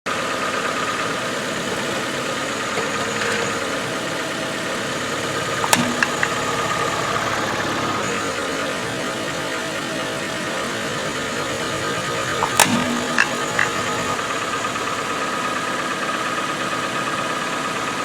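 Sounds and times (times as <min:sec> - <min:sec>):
car engine idling: 0:00.1 - 0:18.0.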